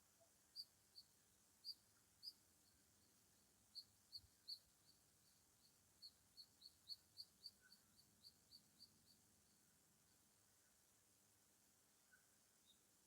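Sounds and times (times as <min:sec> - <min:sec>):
small bird chirping: 0:00.1 - 0:10.8, 0:12.0 - 0:12.9.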